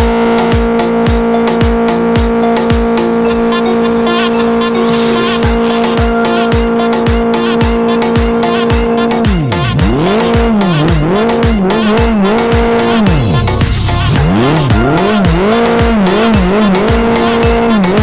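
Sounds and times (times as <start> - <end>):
kick drum: 0.0 - 3.0, 4.9 - 18.0
swooping electronic lead tone: 0.0 - 18.0.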